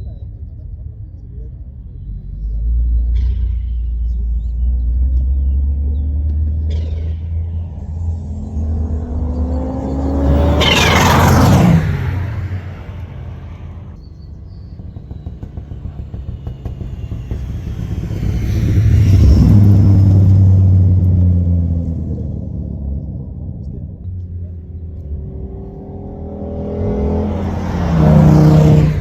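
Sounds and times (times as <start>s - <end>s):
deep engine drone: 0.0s - 29.0s
race car engine passing: 6.4s - 14.0s, 14.8s - 23.5s, 24.3s - 29.0s.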